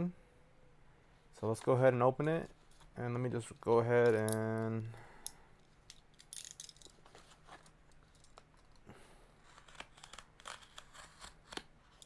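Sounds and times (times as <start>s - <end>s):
packaging being handled and opened: 9.4s - 12.0s.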